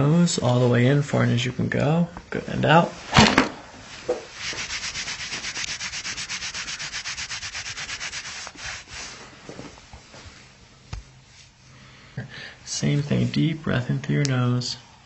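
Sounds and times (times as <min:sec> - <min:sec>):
hands rubbing on body: 0:04.1 - 0:11.6.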